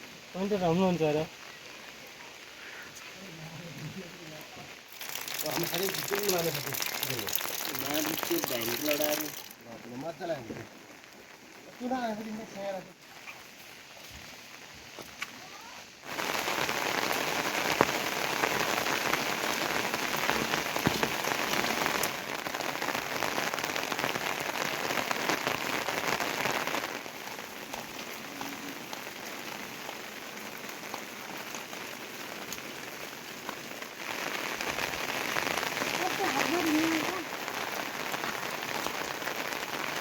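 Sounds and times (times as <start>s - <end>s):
heavy rain falling: 0.0s - 40.0s.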